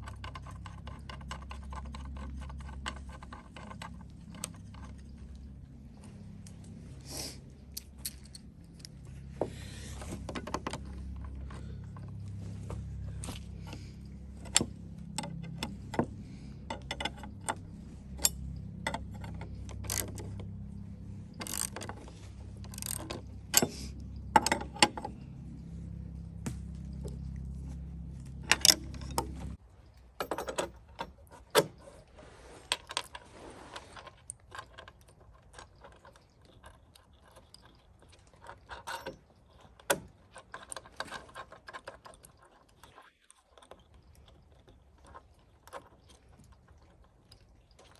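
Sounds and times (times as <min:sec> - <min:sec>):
steady low hum: 0:00.0 - 0:47.9
metal hardware clinking: 0:07.6 - 0:12.4, 0:13.0 - 0:31.7.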